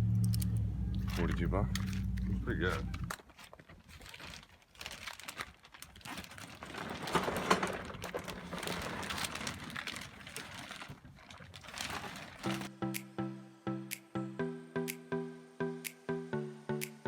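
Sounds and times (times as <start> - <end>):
small items rustling and clicking: 0.3 - 12.7.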